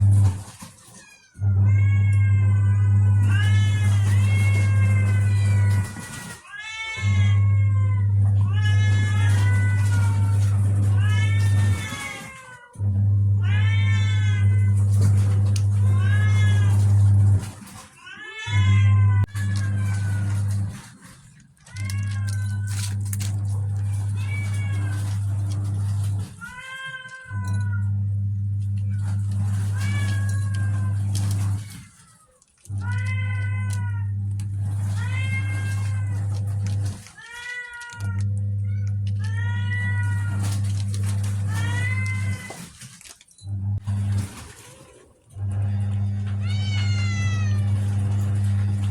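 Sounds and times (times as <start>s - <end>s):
cat meowing: 0.8s - 12.8s, 13.4s - 17.4s, 18.0s - 20.8s, 21.6s - 28.0s, 28.8s - 42.9s, 46.1s - 48.9s
steady low hum: 27.5s - 31.7s.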